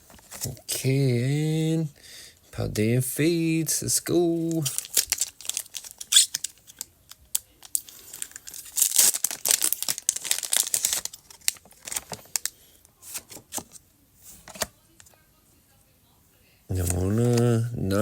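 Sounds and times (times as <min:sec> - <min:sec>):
foil wrapper tearing and crinkling: 0:04.6 - 0:12.5.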